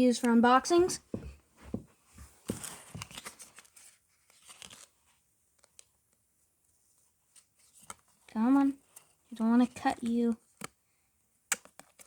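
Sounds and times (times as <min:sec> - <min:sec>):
plush toy rustling: 0:00.7 - 0:04.4.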